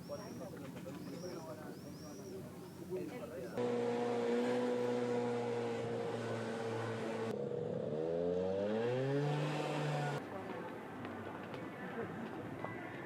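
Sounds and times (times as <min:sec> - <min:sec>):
engine revving up: 0:03.6 - 0:10.2.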